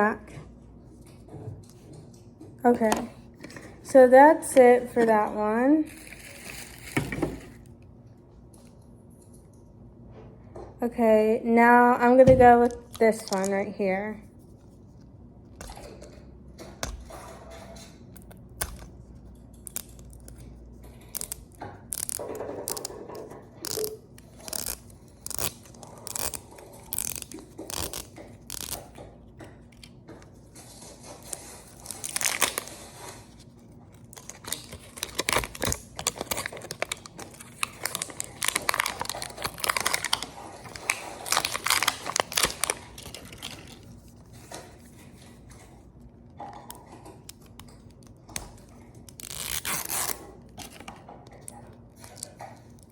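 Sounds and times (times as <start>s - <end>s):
plastic packaging crinkling and tearing: 18.3s - 28.9s, 30.6s - 45.7s, 47.2s - 52.9s.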